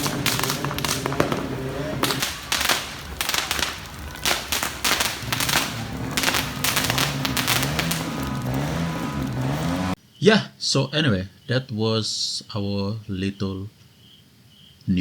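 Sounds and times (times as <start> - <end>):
firecrackers banging: 0.0 - 10.0.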